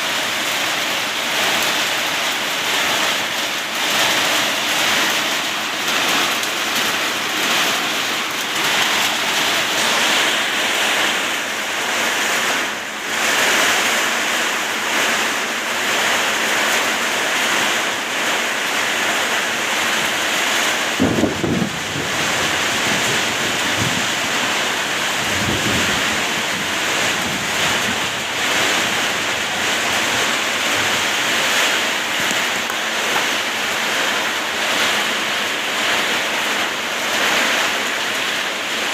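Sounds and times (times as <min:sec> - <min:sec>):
heavy rain and hail: 0:00.0 - 0:38.9
strong wind: 0:20.4 - 0:36.6.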